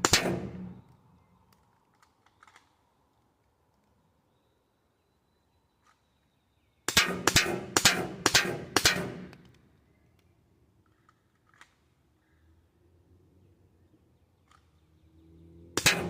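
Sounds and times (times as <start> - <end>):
pistol shots: 0.0 - 0.8, 6.9 - 9.5, 15.8 - 16.0.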